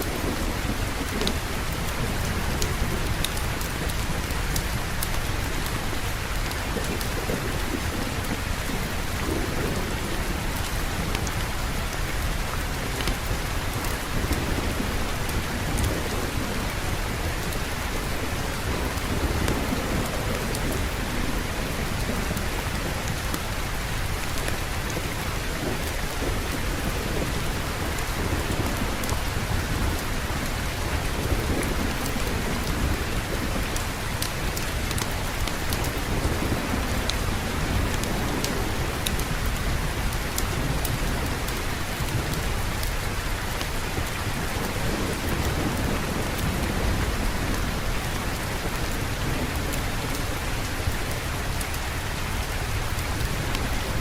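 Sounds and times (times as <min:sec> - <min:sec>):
heavy rain: 0:00.0 - 0:54.0
sharp ticks of raindrops: 0:00.0 - 0:54.0
low thunder rolling: 0:12.8 - 0:42.9.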